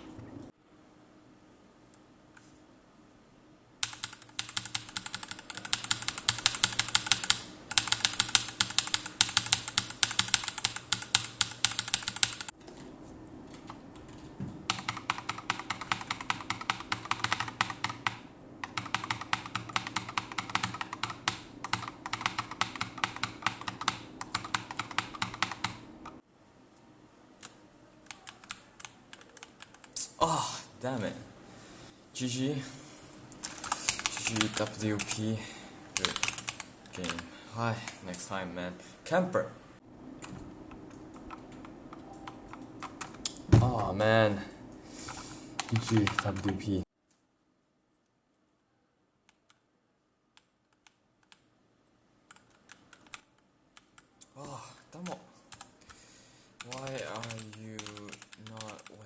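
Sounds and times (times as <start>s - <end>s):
mechanical keyboard fast clicking: 3.8s - 12.5s, 14.7s - 25.8s, 27.4s - 29.9s, 33.4s - 35.2s, 36.0s - 37.2s, 45.6s - 46.5s, 52.3s - 54.1s, 56.6s - 59.0s.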